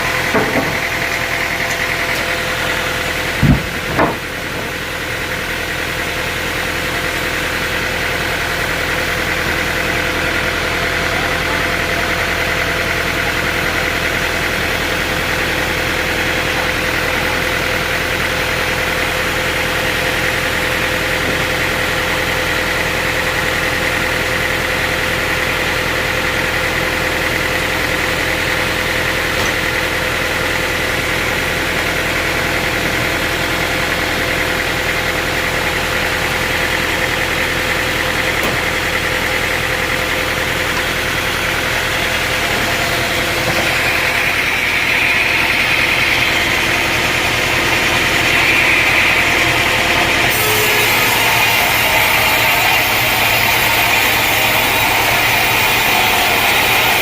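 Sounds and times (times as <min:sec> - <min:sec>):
sawmill machinery running: 0:00.0 - 0:57.0
sharp knocks: 0:00.3 - 0:01.0, 0:03.3 - 0:04.8.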